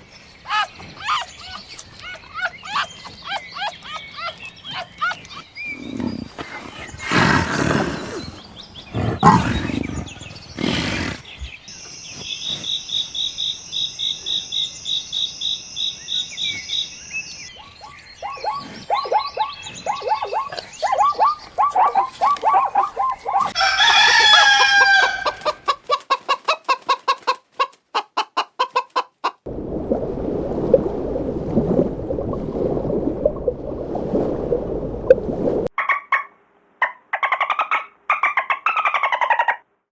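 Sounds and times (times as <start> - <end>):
chickens clucking: 5.8 - 11.2, 24.4 - 29.4
rooster crowing: 23.6 - 25.6.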